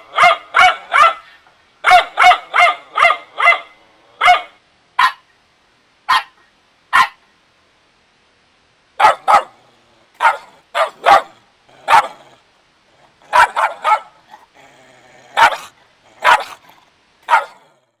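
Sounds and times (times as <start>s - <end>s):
puppy yappy barks: 0.0s - 5.3s, 6.1s - 7.2s, 9.0s - 9.6s, 10.2s - 12.4s, 13.2s - 14.5s, 15.3s - 17.8s.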